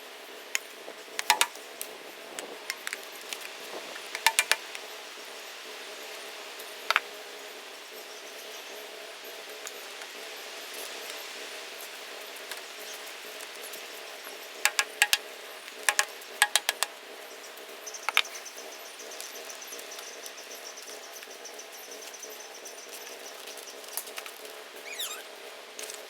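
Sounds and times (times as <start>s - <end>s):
sharp clicks and knocks: 0.6s - 1.6s, 2.7s - 3.0s, 4.2s - 4.7s, 14.7s - 15.2s, 15.8s - 16.9s.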